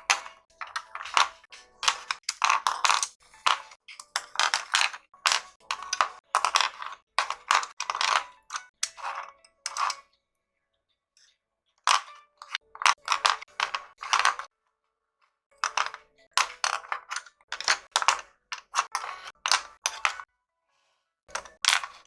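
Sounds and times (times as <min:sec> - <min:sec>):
colored pencils clattering: 0:00.0 - 0:10.0, 0:11.9 - 0:14.5, 0:15.6 - 0:20.2, 0:21.3 - 0:22.0.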